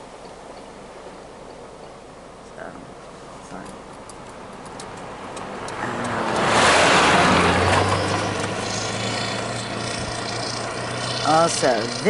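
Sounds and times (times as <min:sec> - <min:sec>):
car driving past: 0:05.1 - 0:12.0.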